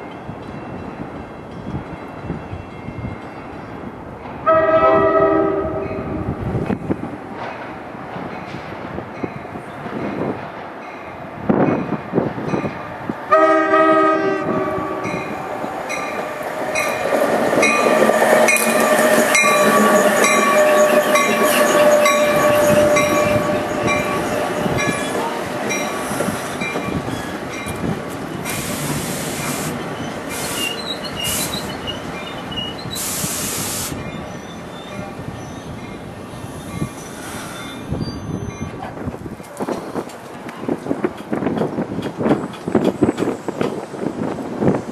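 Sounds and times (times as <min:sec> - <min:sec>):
train horn blast: 0:04.4 - 0:06.4, 0:13.3 - 0:15.2
steady squeal: 0:16.1 - 0:25.2, 0:28.4 - 0:38.7
hissing bursts: 0:28.4 - 0:32.2, 0:32.8 - 0:34.0
train wheels clicking over rail joints: 0:38.7 - 0:44.4.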